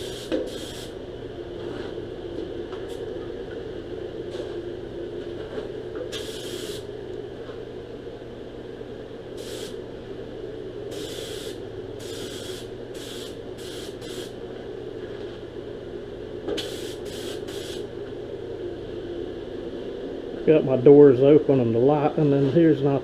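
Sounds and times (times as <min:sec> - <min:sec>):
steady low hum: 0:00.0 - 0:23.0
spray gun hissing: 0:09.4 - 0:09.8, 0:10.9 - 0:14.3, 0:16.6 - 0:17.8.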